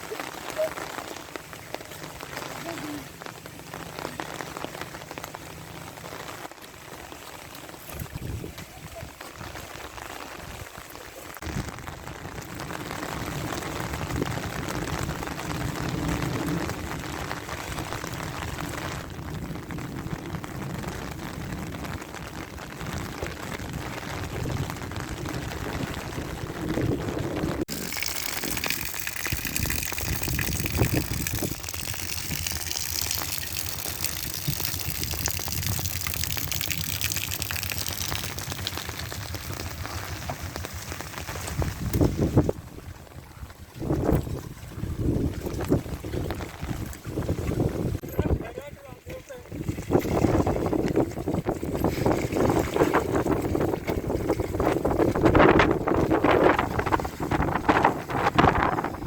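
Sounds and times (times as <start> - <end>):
heavy rain falling: 0.0 - 43.2
water pouring and splashing: 0.0 - 59.0.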